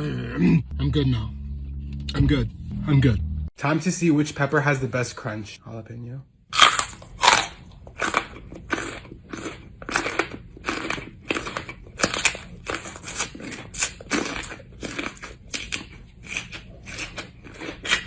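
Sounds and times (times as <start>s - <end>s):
person chewing crunchy pepper: 6.5s - 18.0s.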